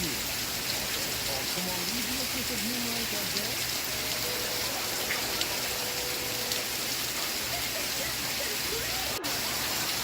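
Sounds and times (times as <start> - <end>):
steady rainfall: 0.0 - 10.0
faint tv voices: 6.9 - 10.0.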